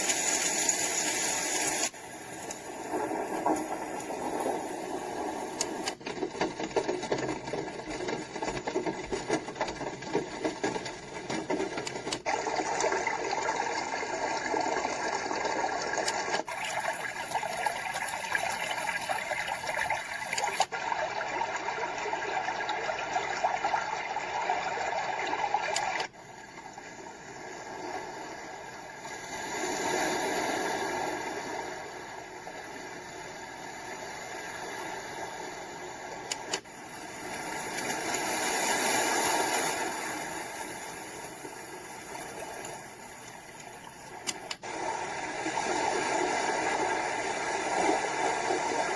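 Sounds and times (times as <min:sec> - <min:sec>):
white noise machine hiss: 0:00.0 - 0:06.0
rushing water: 0:00.0 - 0:48.9.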